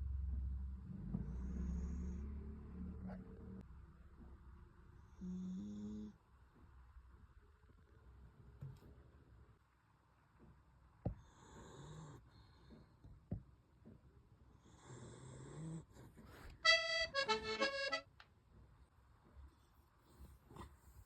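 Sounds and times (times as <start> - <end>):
dog snoring: 1.0 - 3.2, 5.1 - 6.2, 11.1 - 12.7, 14.6 - 16.2.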